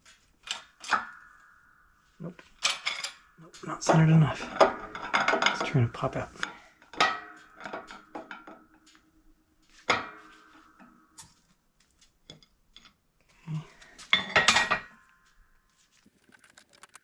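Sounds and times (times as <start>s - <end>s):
metal tools clanking: 16.1s - 17.0s.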